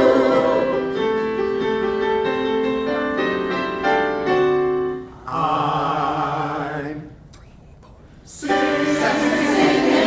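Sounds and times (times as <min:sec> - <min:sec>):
piano playing held chords: 0:00.0 - 0:05.1
voices singing a held note: 0:08.3 - 0:10.0.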